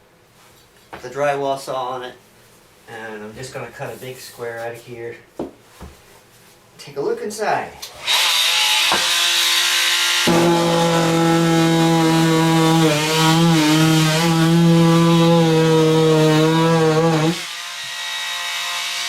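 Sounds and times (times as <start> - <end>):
oscillating multi-tool cutting: 8.0 - 19.0.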